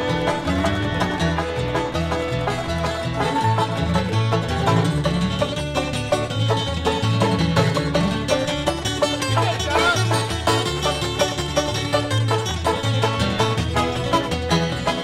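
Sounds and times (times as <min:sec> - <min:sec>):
banjo picking: 0:00.0 - 0:15.0
bluegrass band playing: 0:00.0 - 0:15.0.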